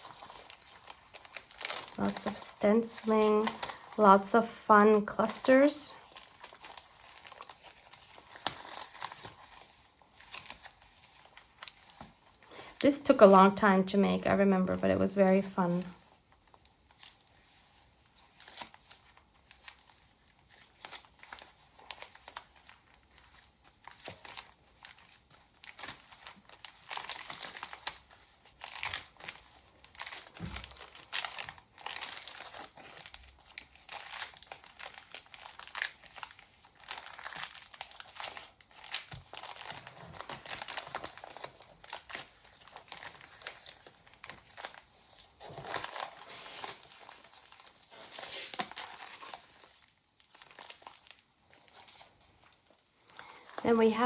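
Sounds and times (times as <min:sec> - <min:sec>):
paper rustling and crinkling: 0:00.0 - 0:13.7, 0:14.7 - 0:54.0.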